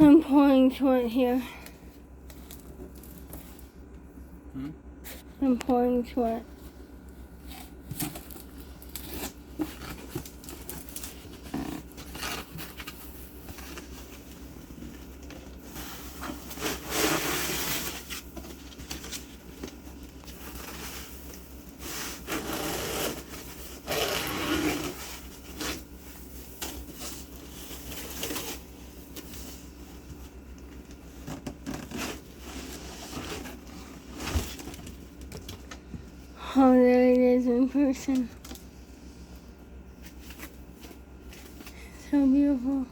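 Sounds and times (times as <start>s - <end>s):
packaging scraping and rustling: 7.4s - 35.6s.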